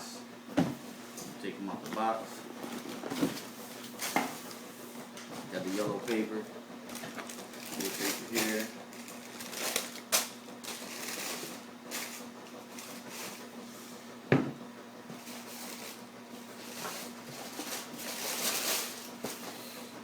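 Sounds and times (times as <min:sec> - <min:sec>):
tissue paper rustling: 0:06.9 - 0:13.5, 0:15.2 - 0:19.6.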